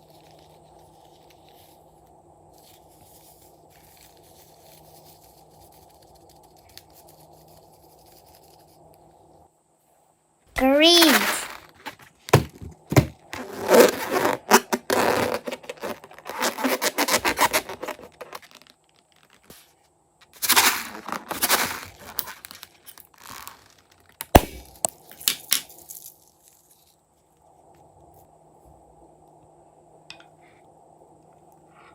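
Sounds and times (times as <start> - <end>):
slime crinkling and crackling: 13.3 - 19.8, 20.9 - 26.8.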